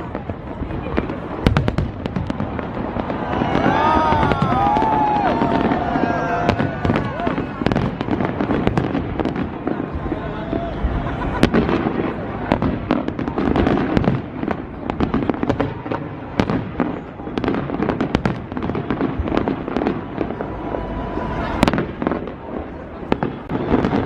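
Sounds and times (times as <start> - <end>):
crowd murmur: 0.0 - 24.0
fireworks bangs and crackles: 0.0 - 24.0.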